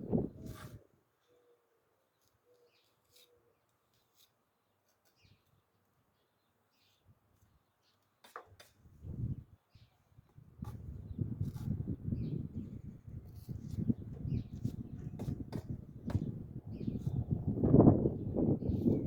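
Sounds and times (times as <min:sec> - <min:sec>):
faint bird chirps: 0:01.2 - 0:08.1.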